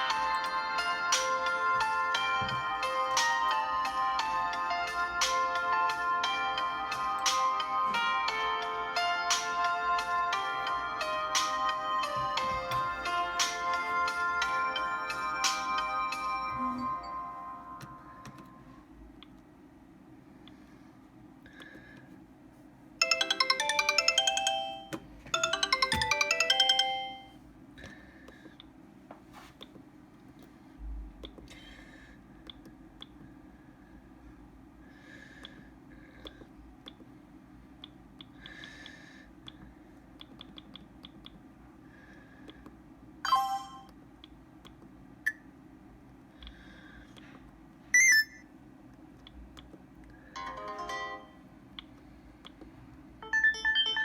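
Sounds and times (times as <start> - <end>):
mobile phone ringtone melody: 0.0 - 18.6, 23.0 - 27.4, 43.3 - 43.9, 50.4 - 51.4, 53.2 - 54.0.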